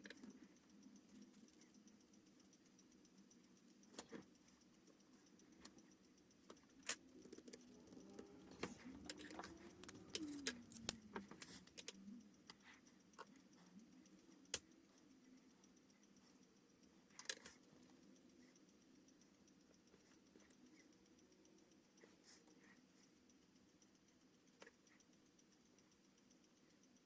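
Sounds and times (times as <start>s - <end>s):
pens clicking and tapping: 6.6s - 12.0s
light scratching: 6.9s - 12.3s.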